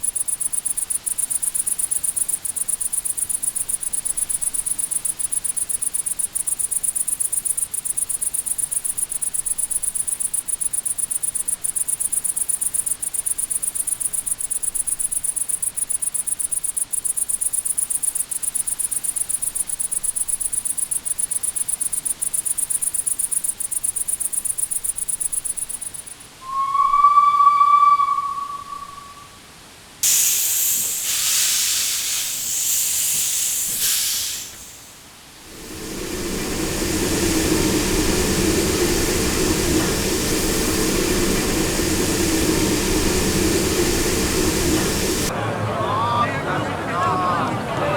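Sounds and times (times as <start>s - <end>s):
crickets chirping: 0.0s - 45.3s
steam locomotive whistle: 26.4s - 34.6s, 35.5s - 47.9s
hissing steam: 30.0s - 45.4s.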